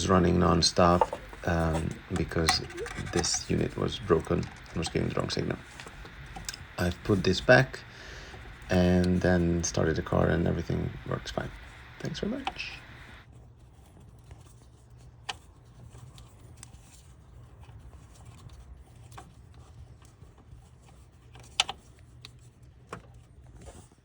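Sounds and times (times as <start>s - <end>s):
faint low hum: 0.0s - 13.2s.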